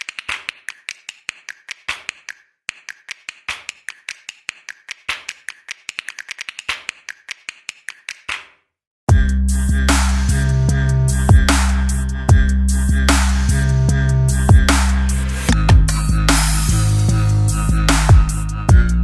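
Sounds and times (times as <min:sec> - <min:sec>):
rapid sharp clicks: 0:00.0 - 0:08.5.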